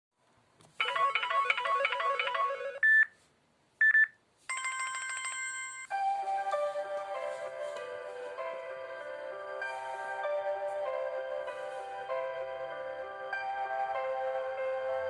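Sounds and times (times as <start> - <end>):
phone ringtone melody: 0.8 - 3.1, 3.8 - 15.0
short phone beeps: 2.4 - 3.2, 3.8 - 4.2.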